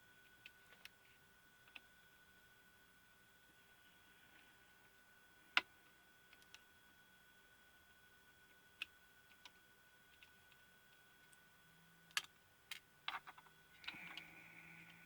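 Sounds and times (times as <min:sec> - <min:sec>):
small clicks and taps of parts: 0:12.1 - 0:15.0.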